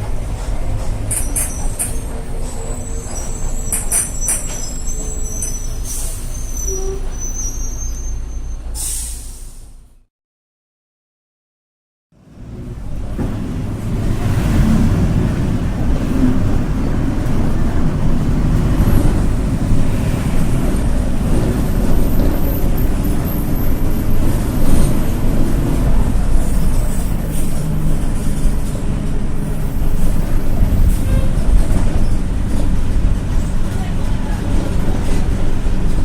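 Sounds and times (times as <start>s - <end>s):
bus wheels humming: 0.0s - 10.0s, 12.2s - 36.0s
road rumble: 0.0s - 10.1s, 12.2s - 36.0s.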